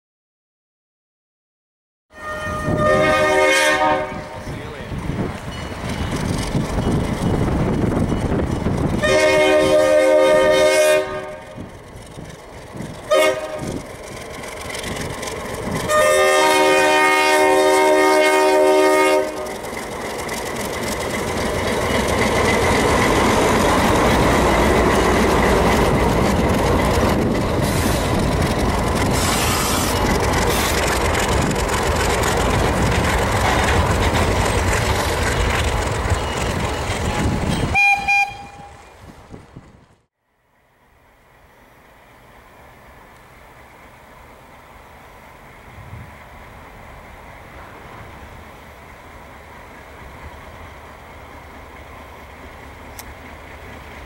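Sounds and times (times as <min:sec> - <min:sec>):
locomotive horn blasts: 0:02.1 - 0:04.5, 0:09.0 - 0:11.6, 0:13.1 - 0:13.8, 0:15.9 - 0:19.6, 0:37.7 - 0:38.8
train engine and wheel rumble: 0:02.1 - 0:54.0.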